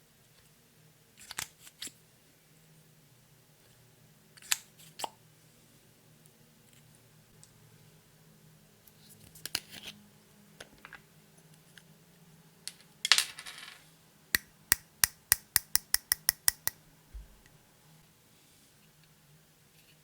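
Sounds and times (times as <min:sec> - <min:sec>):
small hard objects clicking: 0:14.4 - 0:16.8.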